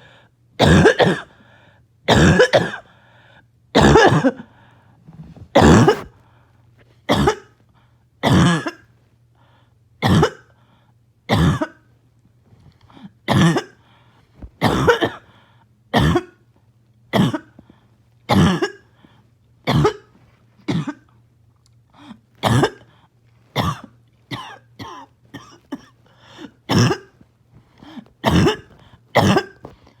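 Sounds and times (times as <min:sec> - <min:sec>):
person barking cough: 0:00.6 - 0:01.4, 0:02.1 - 0:02.8, 0:03.8 - 0:04.5, 0:05.3 - 0:06.1, 0:07.1 - 0:07.5, 0:08.2 - 0:08.8, 0:10.0 - 0:10.5, 0:11.3 - 0:11.9, 0:13.2 - 0:13.8, 0:14.6 - 0:15.3, 0:15.9 - 0:16.4, 0:17.1 - 0:17.6, 0:18.3 - 0:18.9, 0:19.7 - 0:20.1, 0:20.7 - 0:21.1, 0:22.4 - 0:22.9, 0:23.6 - 0:27.2, 0:27.8 - 0:29.9.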